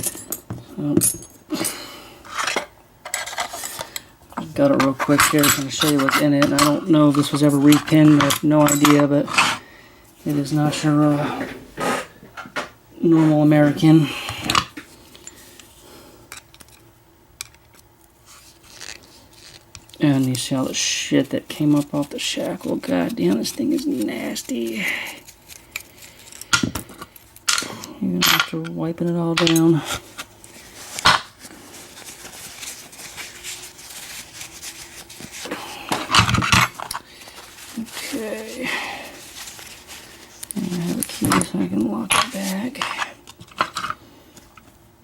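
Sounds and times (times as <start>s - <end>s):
soft rubbing: 29.8s - 43.2s.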